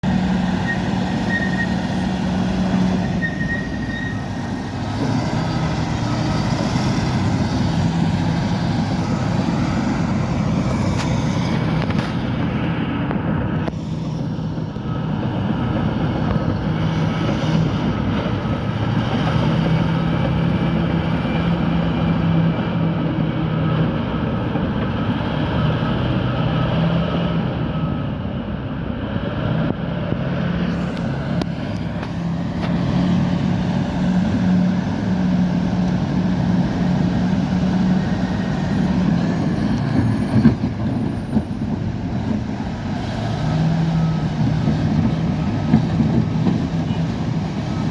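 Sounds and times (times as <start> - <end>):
bulldozer diesel engine: 0.0 - 47.9
metal tracks clattering: 44.1 - 47.9.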